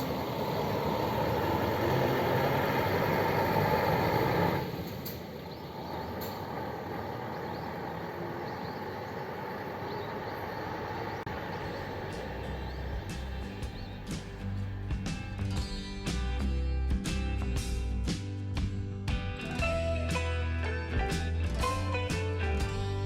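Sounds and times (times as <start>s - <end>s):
diesel bus engine running: 0.0s - 16.8s.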